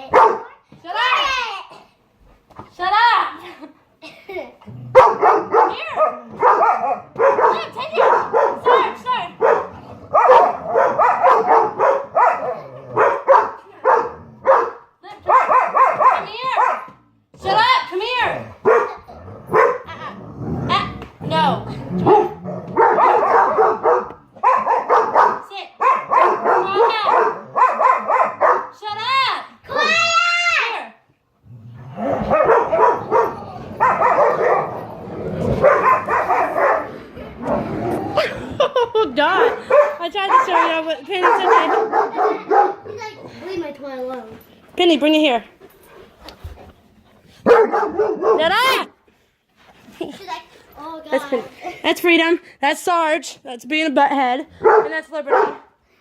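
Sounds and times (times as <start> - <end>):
dogs barking: 0.0 - 0.6, 4.9 - 17.0, 18.6 - 20.0, 22.0 - 28.8, 32.1 - 43.2, 47.4 - 48.9, 54.6 - 55.7.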